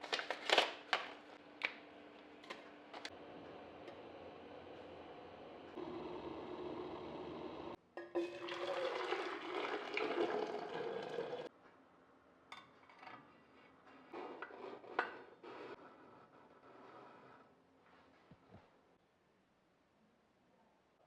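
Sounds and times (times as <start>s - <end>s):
water running into glass vase: 8.1s - 11.5s.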